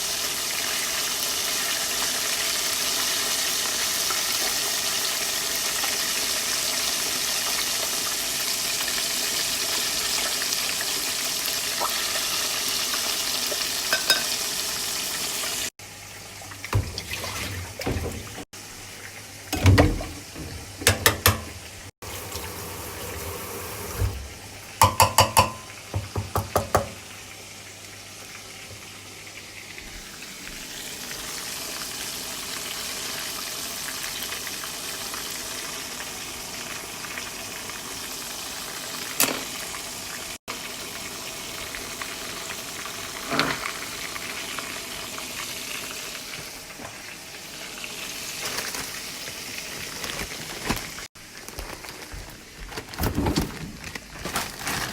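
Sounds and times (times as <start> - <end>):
food sizzling in a pan: 0.0 - 16.6, 17.5 - 52.6
utensils tapping cookware: 13.9 - 14.4, 19.6 - 21.7, 24.8 - 27.0.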